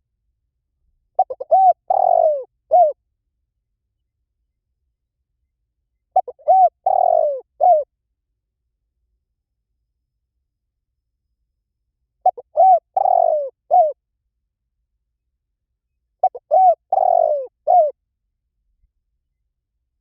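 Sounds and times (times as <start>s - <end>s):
dove cooing: 1.2s - 3.0s, 6.2s - 7.9s, 12.2s - 14.0s, 16.2s - 18.0s.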